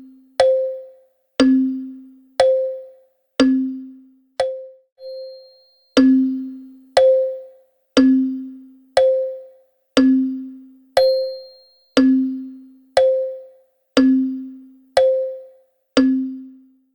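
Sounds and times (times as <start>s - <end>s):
wall clock ticking: 0.4s - 3.7s, 4.4s - 4.7s, 6.0s - 16.4s.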